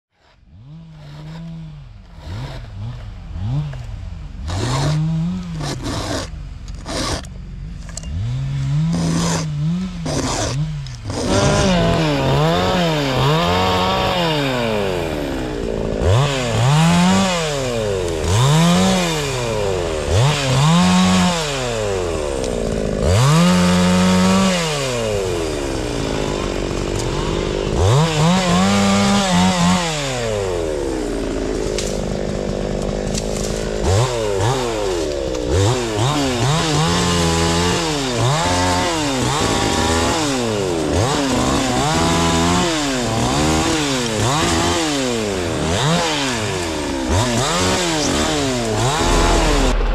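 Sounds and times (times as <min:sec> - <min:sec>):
chainsaw revving: 0:00.2 - 0:07.3, 0:08.0 - 0:49.9.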